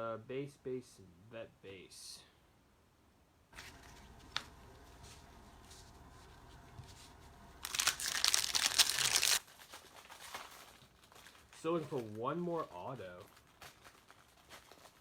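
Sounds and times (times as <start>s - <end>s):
wrapper crinkling and tearing: 7.2s - 15.0s.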